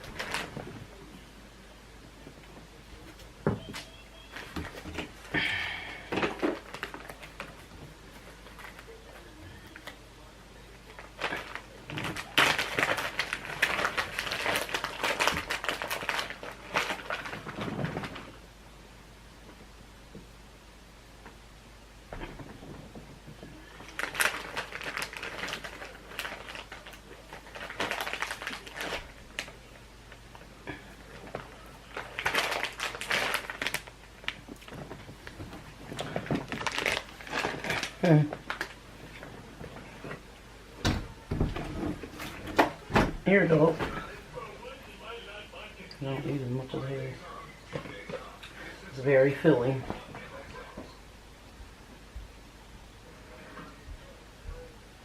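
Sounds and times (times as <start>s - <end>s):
food wrapping crinkling: 0.0s - 1.0s, 3.0s - 10.0s, 10.8s - 18.4s, 22.3s - 40.3s.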